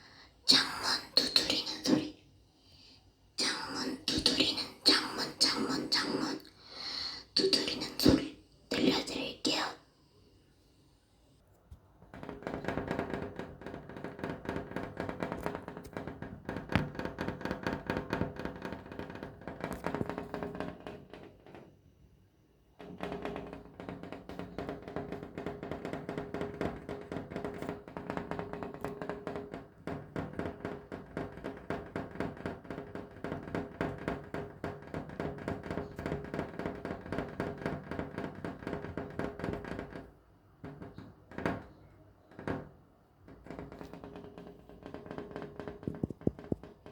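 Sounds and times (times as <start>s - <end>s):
rapid tapping on window glass: 12.0s - 21.7s, 22.8s - 46.9s.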